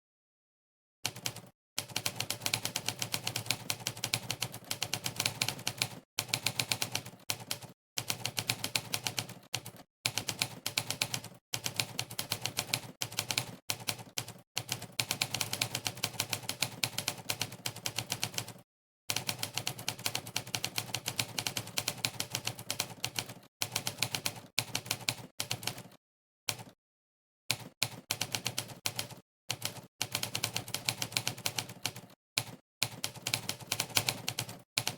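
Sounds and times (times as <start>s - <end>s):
fast typing on keyboard: 1.0s - 26.8s, 27.5s - 34.9s.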